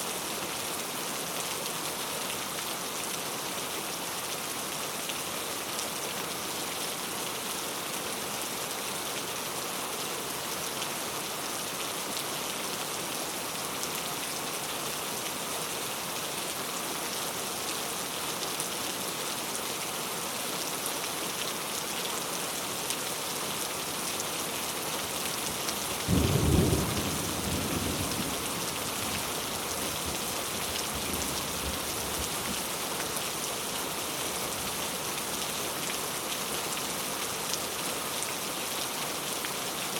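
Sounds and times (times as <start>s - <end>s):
heavy rain hissing: 24.5s - 33.4s.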